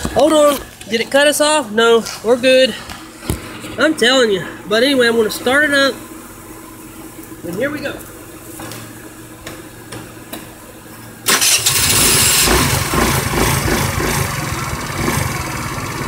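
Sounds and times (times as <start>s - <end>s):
scooter engine starting and idling: 11.2s - 16.0s.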